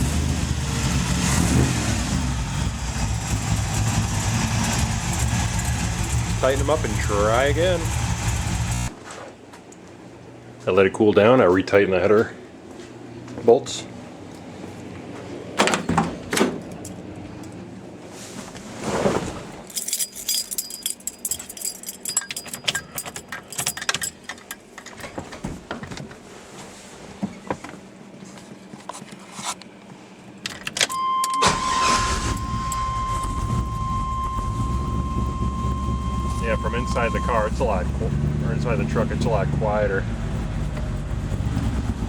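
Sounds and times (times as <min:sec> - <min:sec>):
engine starting and idling: 0:01.5 - 0:08.9, 0:31.3 - 0:39.3
keys jangling: 0:19.7 - 0:25.1
steady high tone: 0:30.9 - 0:39.7.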